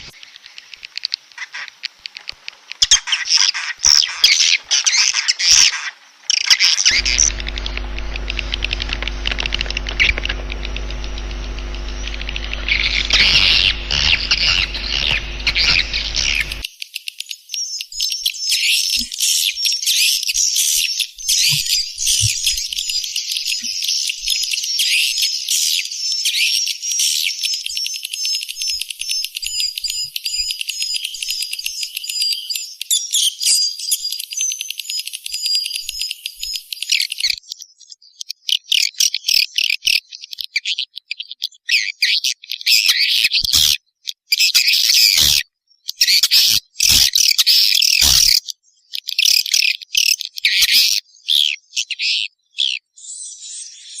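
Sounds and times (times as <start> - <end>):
high twittering bird chirps: 6.2 - 16.6
rapid chattering clicks: 6.9 - 16.6.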